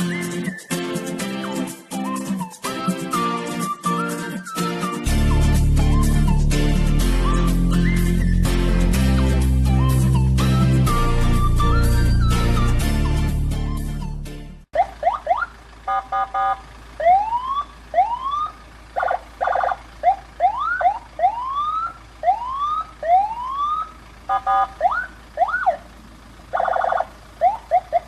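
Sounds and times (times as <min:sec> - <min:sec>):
siren yelps: 0:14.8 - 0:25.9, 0:26.5 - 0:28.0
buzzing horn blasts: 0:15.9 - 0:16.6.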